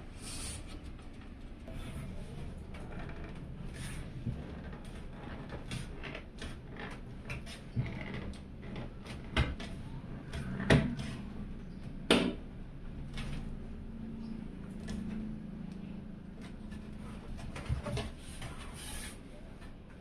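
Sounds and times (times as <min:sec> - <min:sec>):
computer case parts clicking and knocking: 0:04.3 - 0:11.2, 0:12.0 - 0:12.5.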